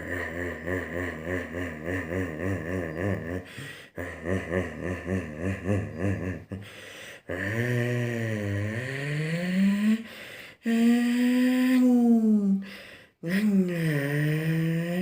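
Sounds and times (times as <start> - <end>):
person imitating engine hum: 0.0 - 6.6, 7.3 - 10.0, 13.2 - 15.0.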